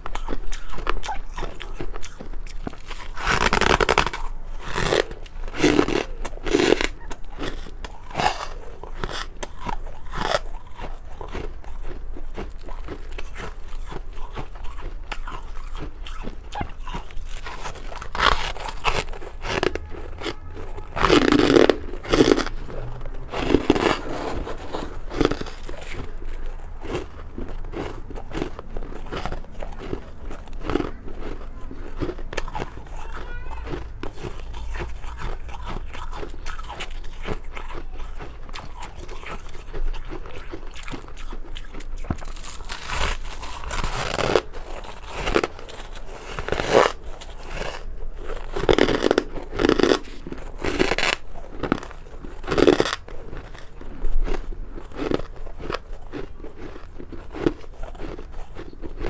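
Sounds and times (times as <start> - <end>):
person crunching frost: 0.0 - 59.0.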